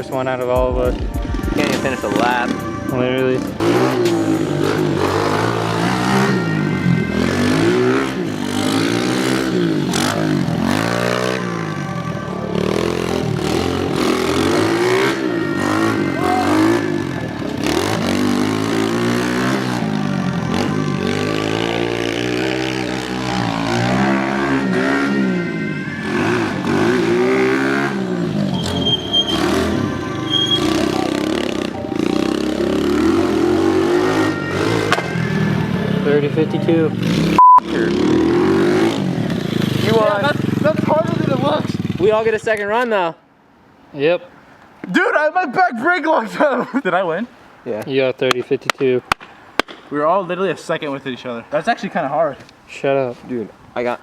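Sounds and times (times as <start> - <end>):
pit bike engine revving: 1.0 - 42.3.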